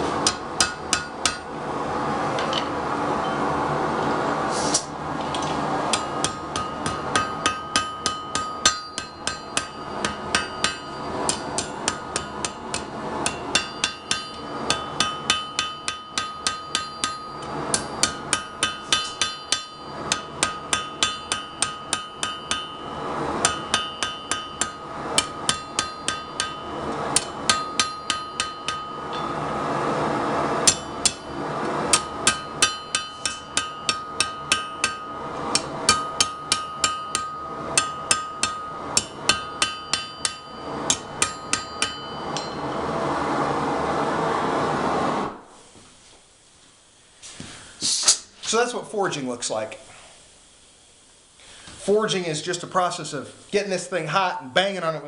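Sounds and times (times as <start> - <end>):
hammer striking hot steel: 0.0 - 1.6, 4.7 - 43.0.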